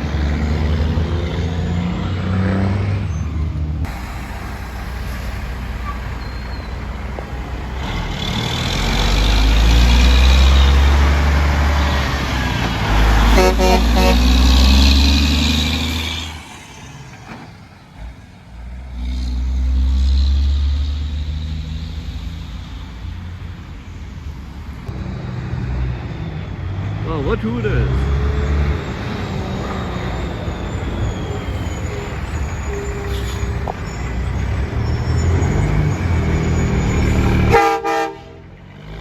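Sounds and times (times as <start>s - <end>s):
truck diesel engine passing: 0.0s - 39.0s
truck horn blast: 12.9s - 15.4s, 27.8s - 38.5s.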